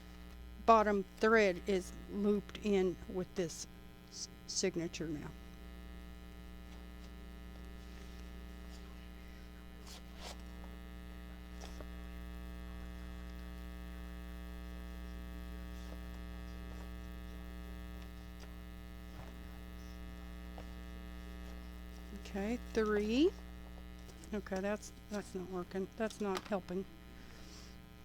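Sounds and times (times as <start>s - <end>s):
electrical mains hum: 0.0s - 28.0s
faint ticks and rustles: 6.5s - 26.9s.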